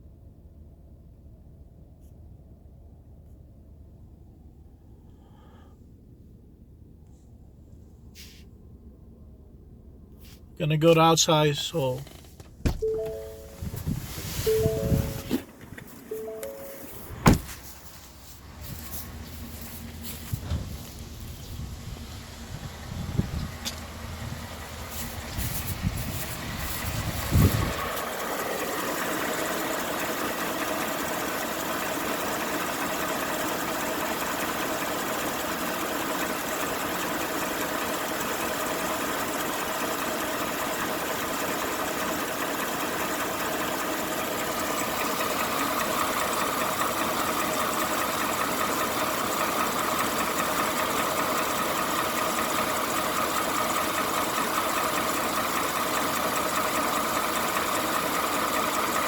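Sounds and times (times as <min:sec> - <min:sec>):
engine idling: 0:00.0 - 0:59.0.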